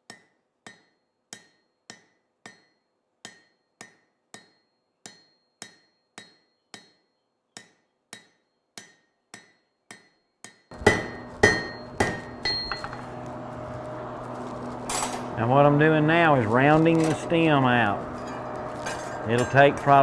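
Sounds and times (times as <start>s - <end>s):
hammer blows on anvil: 7.6s - 13.3s, 16.2s - 20.0s
steady hum: 10.7s - 20.0s.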